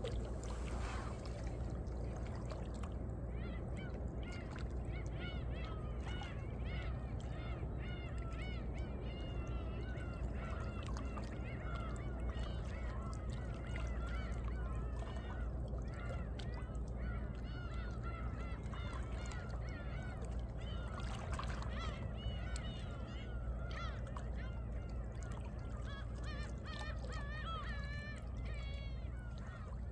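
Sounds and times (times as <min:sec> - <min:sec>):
low surf rumble: 0:00.0 - 0:02.4
water lapping between rocks: 0:00.0 - 0:03.0.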